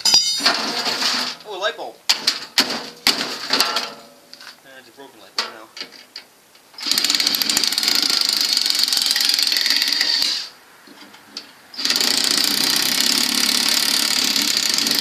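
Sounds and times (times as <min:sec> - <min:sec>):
power tool rattling buzz: 0:06.8 - 0:10.5, 0:11.8 - 0:15.0.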